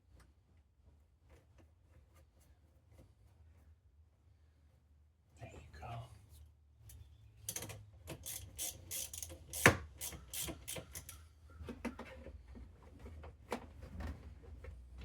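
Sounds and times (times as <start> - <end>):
small clicks taps and scrapes: 6.8 - 14.8.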